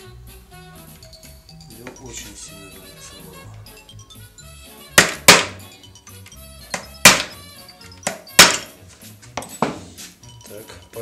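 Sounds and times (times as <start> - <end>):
hammer striking metal: 5.0 - 5.7, 6.7 - 7.4, 8.0 - 8.8.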